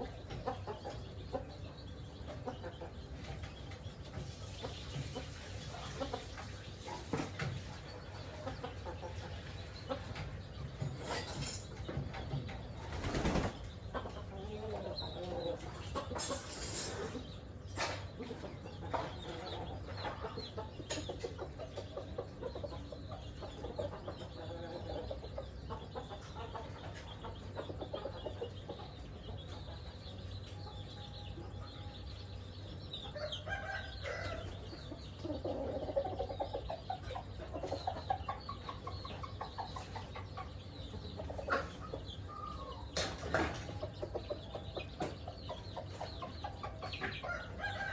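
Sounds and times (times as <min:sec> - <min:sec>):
chickens clucking: 0:00.0 - 0:47.9
hens and chicks calling: 0:00.0 - 0:47.9
rooster crowing: 0:33.2 - 0:34.5.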